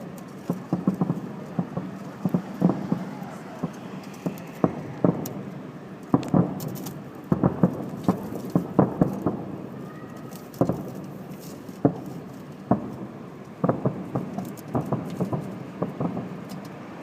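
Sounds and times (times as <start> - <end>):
distant fireworks bangs: 0.0 - 17.0.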